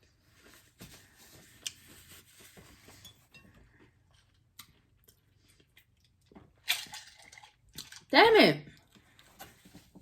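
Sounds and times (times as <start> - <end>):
soft chewing: 1.4 - 6.6.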